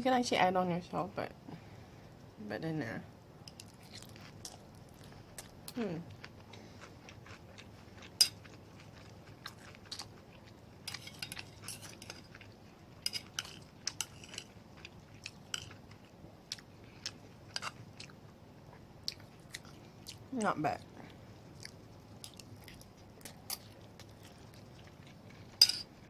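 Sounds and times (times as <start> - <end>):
close chewing with mouth clicks: 3.5 - 20.2, 21.5 - 25.6.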